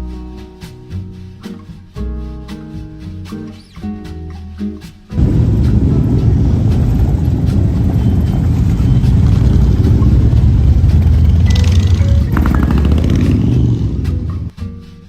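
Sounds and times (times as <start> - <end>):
motorcycle engines rumbling: 5.2 - 14.5.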